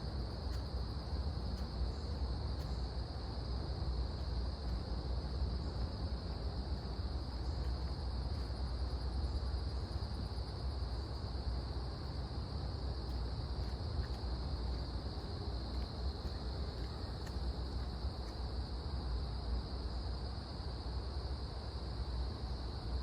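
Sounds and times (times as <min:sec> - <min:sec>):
insect chorus: 0:00.0 - 0:23.0.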